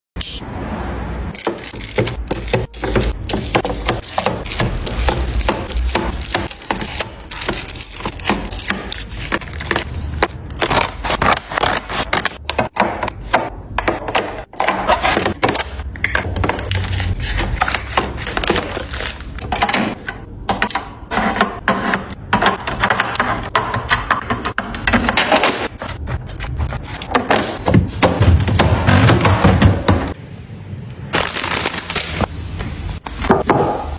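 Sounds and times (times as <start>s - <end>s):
containers and lids clicking and knocking: 1.3s - 26.0s.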